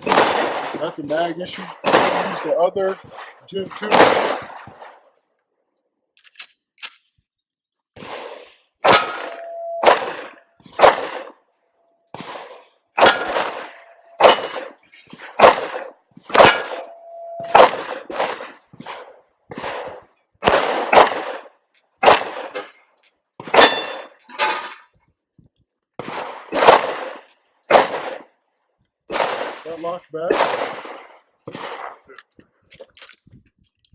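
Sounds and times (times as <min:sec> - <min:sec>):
pistol shots: 0:00.0 - 0:05.1, 0:08.0 - 0:11.5, 0:12.1 - 0:22.8, 0:23.4 - 0:24.2, 0:26.0 - 0:28.4, 0:29.1 - 0:32.1
steel target ringing: 0:08.8 - 0:10.1, 0:13.0 - 0:14.7, 0:16.4 - 0:17.7, 0:23.6 - 0:24.8.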